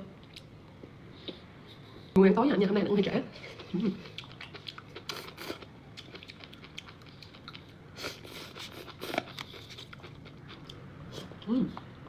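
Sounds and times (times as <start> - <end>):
person chewing food: 3.4 - 11.9.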